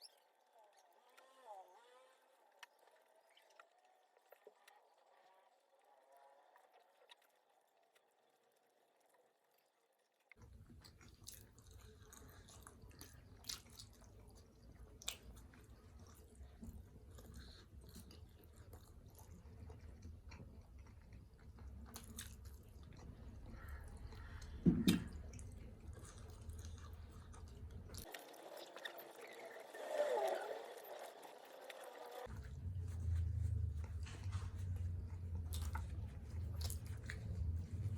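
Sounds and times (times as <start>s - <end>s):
person chewing food: 10.3s - 29.2s, 31.0s - 37.9s
low steady hum: 10.4s - 37.9s.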